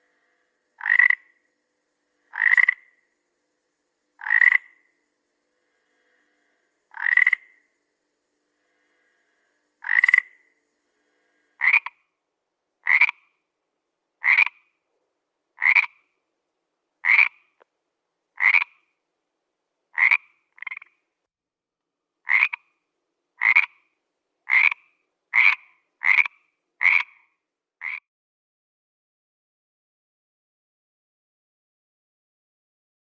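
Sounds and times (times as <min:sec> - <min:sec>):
frog croaking: 0:00.1 - 0:01.4, 0:02.2 - 0:03.1, 0:04.2 - 0:05.0, 0:05.7 - 0:07.8, 0:08.6 - 0:12.1, 0:12.8 - 0:13.4, 0:14.2 - 0:14.7, 0:15.6 - 0:16.2, 0:17.0 - 0:17.6, 0:18.4 - 0:18.9, 0:20.0 - 0:21.0, 0:22.2 - 0:22.8, 0:23.4 - 0:28.1.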